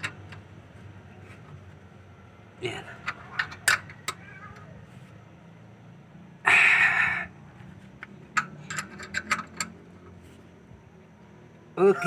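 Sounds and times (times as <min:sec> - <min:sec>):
wrench clicking: 0:08.3 - 0:09.8.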